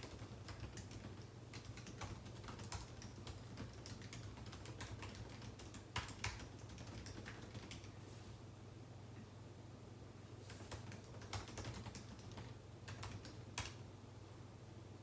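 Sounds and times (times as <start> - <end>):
computer keyboard typing: 0.0 - 8.0, 10.5 - 13.8.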